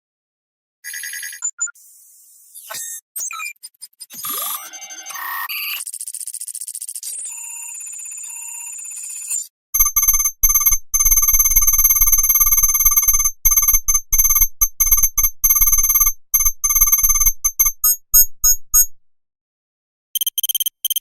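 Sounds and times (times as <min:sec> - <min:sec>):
rapid electronic beeps: 0:09.3 - 0:19.0, 0:20.2 - 0:21.0.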